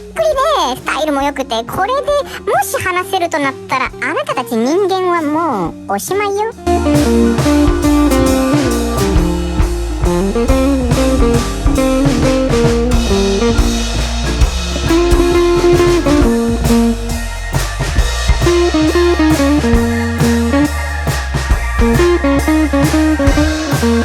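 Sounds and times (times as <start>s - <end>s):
blues electric guitar bending notes: 0.0s - 24.0s
drum kit beat: 0.0s - 24.0s.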